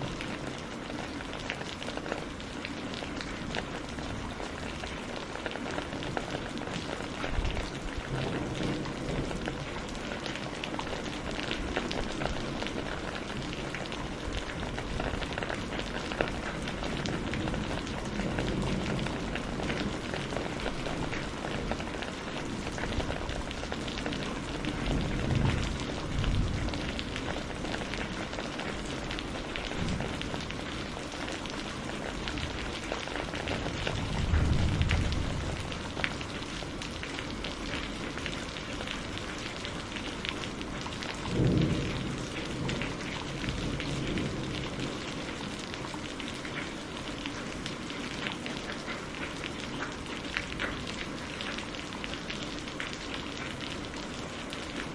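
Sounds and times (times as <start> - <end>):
rain pouring: 0.0 - 54.9
low thunder rolls: 24.2 - 30.9, 33.4 - 36.2, 41.2 - 45.3.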